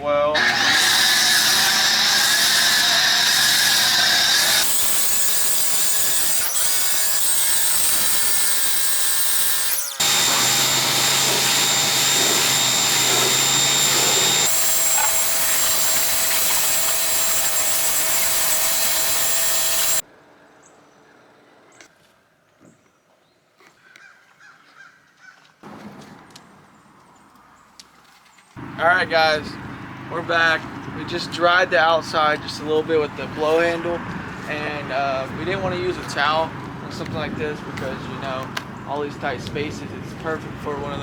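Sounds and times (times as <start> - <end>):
electric blower whining: 0.4 - 20.0.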